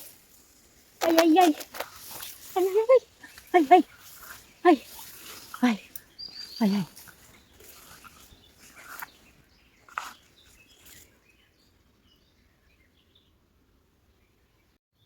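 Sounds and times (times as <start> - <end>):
rustling through dense undergrowth: 0.0 - 11.6
plant stems snapping: 1.0 - 2.5
faint bird chirps: 2.0 - 13.4.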